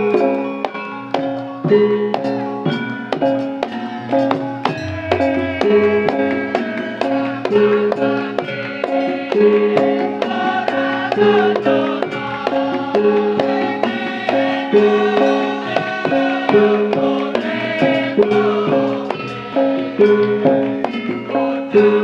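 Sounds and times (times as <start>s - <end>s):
metallophones ringing notes: 0.0s - 8.8s
hand drum strokes: 0.2s - 21.2s.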